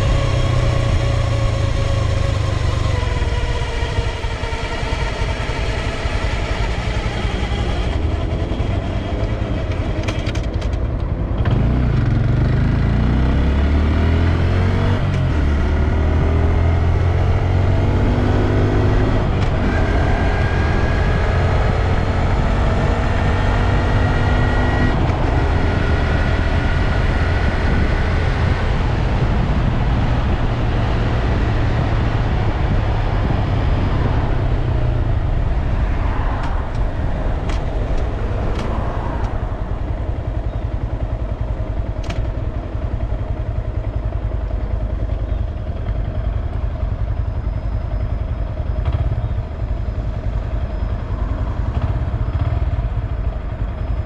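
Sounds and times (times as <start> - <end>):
motorcycle engine accelerating: 0.0 - 54.0.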